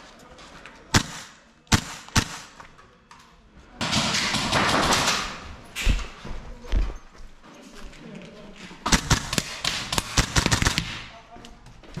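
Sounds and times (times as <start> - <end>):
airsoft rifle shots: 0.9 - 2.6, 3.8 - 5.4, 8.9 - 11.1.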